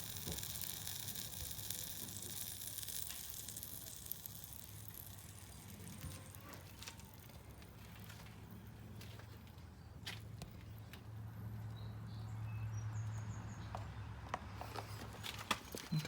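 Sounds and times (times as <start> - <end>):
solder flux sizzling: 0.0 - 8.0
small ticks: 0.0 - 8.4.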